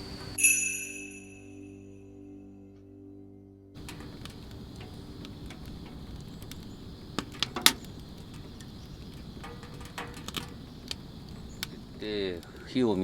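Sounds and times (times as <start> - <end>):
low hiss: 3.8 - 13.0
wood stove clicks and cracks: 3.8 - 13.0.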